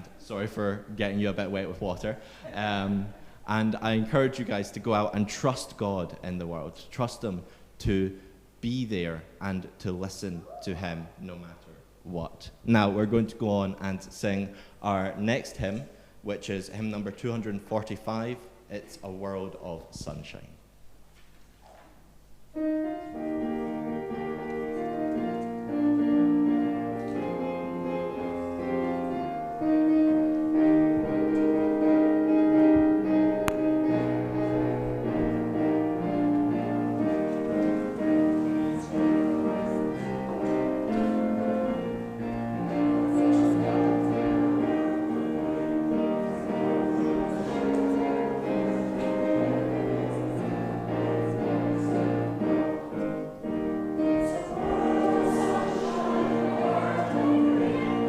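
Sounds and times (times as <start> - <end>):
piano playing a hymn tune: 22.5 - 58.0.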